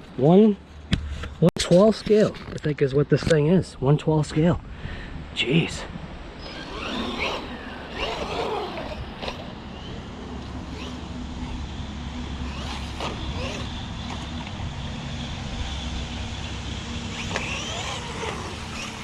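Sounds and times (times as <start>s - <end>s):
electric motor whining: 6.4s - 19.0s
toy car knocking on ground: 17.2s - 18.9s.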